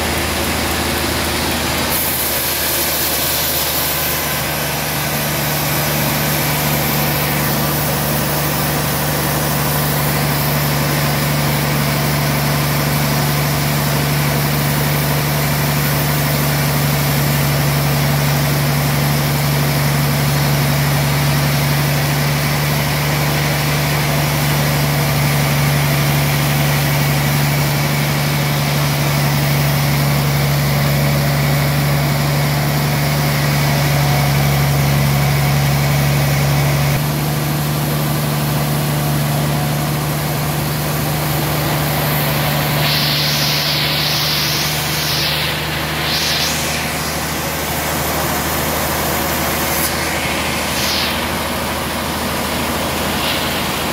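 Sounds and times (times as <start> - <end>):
band sawmill humming: 0.0 - 16.7, 38.9 - 53.9
short high-pitched sweeps: 41.4 - 53.9.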